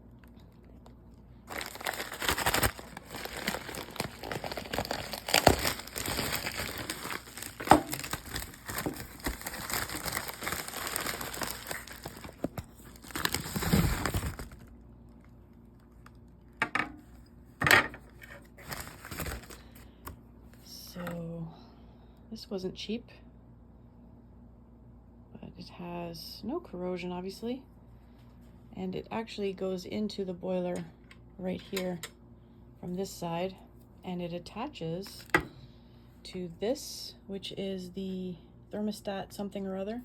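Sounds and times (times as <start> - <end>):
packaging crinkling: 1.4 - 15.2, 18.2 - 20.0, 35.0 - 35.5.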